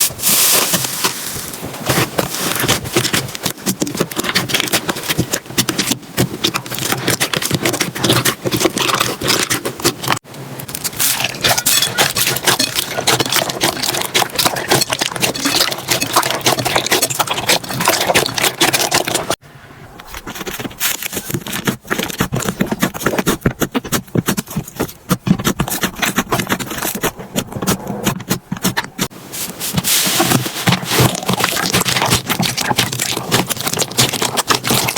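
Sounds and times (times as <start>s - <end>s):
slime crackling and popping: 30.2s - 34.9s.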